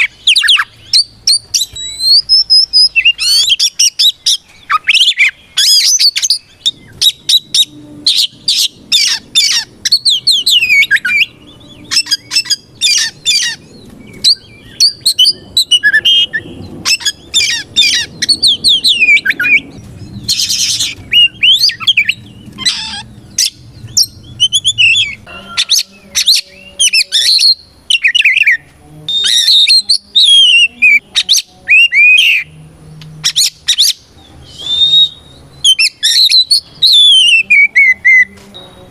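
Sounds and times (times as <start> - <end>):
magpie-robin singing: 0.0 - 38.9.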